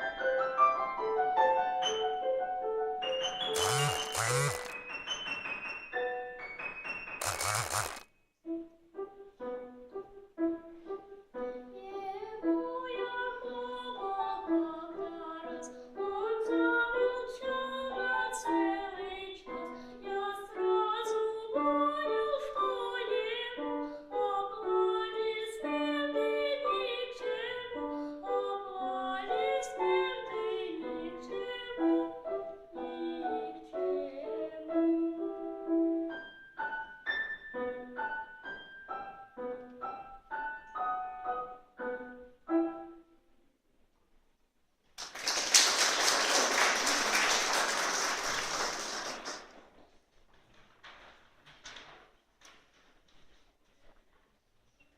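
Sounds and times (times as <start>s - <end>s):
piano accompaniment: 0.0s - 7.2s, 28.8s - 43.0s
boy singing: 32.7s - 35.2s.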